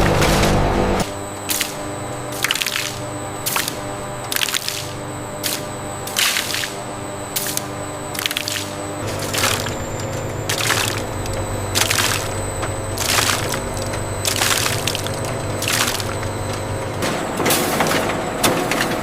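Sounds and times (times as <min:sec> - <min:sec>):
factory machinery humming: 0:00.0 - 0:19.0
stems crunching and splintering: 0:02.4 - 0:05.6, 0:08.2 - 0:16.6.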